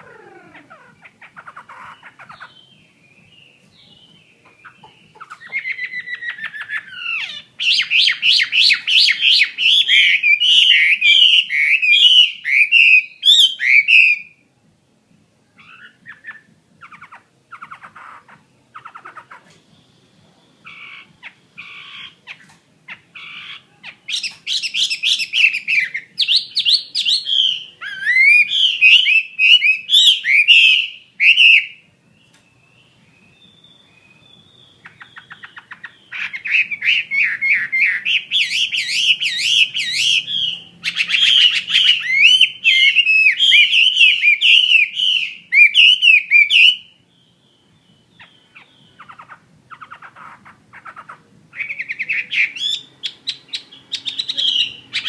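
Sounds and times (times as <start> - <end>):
bird singing whistled phrases: 0.0 - 14.4, 23.2 - 50.3, 51.6 - 55.0.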